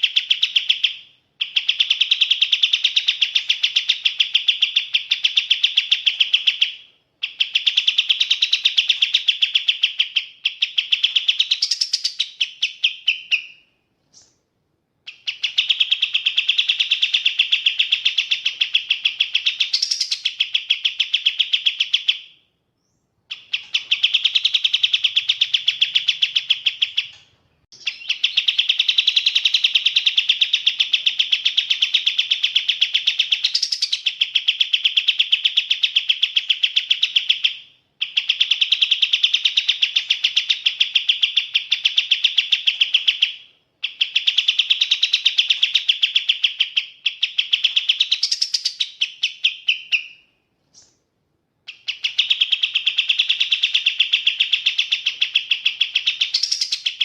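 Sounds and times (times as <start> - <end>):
bird chirping rapidly: 0.0 - 14.4, 15.0 - 51.0, 51.7 - 57.0.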